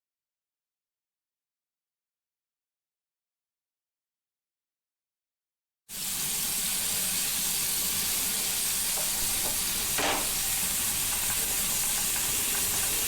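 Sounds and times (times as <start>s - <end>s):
chicken sizzling in a grill pan: 5.9s - 13.0s.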